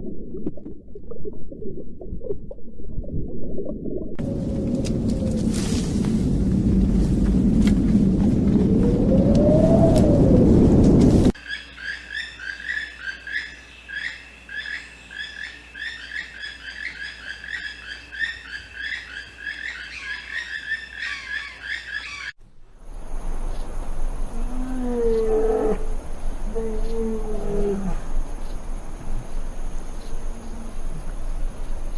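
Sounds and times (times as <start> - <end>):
low held animal call: 24.4 - 28.1.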